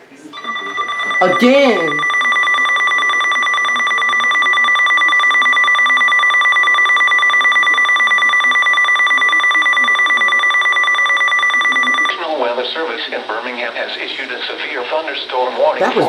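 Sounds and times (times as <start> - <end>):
electronic alarm tone: 0.4 - 12.1.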